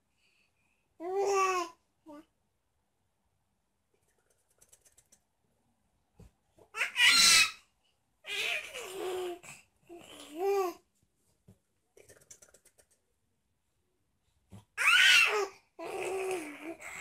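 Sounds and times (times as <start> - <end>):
baby squealing and babbling: 6.7 - 7.6, 8.3 - 10.8, 14.8 - 17.0.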